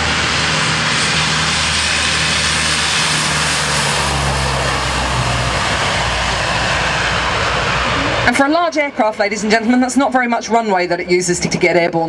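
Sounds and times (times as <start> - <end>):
aircraft engines roaring: 0.0 - 12.0.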